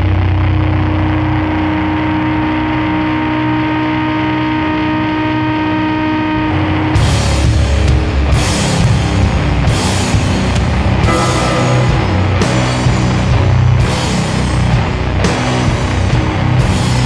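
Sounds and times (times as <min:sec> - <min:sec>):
droning distorted guitar chord: 0:00.0 - 0:17.0
metal band with drums and cymbals: 0:06.9 - 0:17.0.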